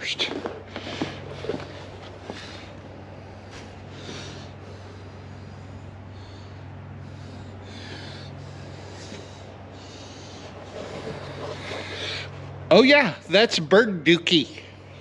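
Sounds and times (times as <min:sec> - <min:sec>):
steady low hum: 0:00.0 - 0:15.0
person breathing and sniffing: 0:03.4 - 0:12.5.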